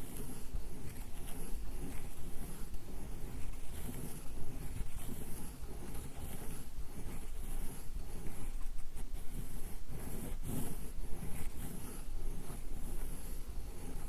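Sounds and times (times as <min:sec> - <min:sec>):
ink stick scraping on inkstone: 0:00.0 - 0:14.0.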